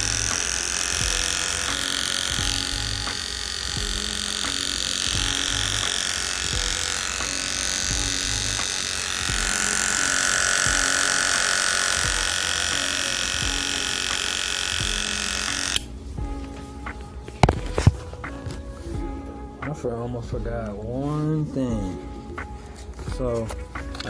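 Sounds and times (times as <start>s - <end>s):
hair clipper motor whining: 0.0s - 15.9s.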